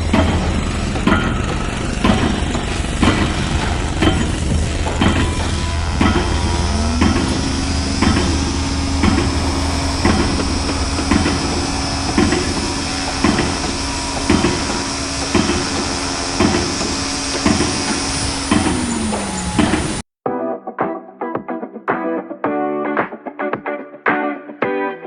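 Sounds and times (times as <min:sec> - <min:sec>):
hammer blows: 0:00.0 - 0:20.0
machine drone: 0:00.0 - 0:20.1.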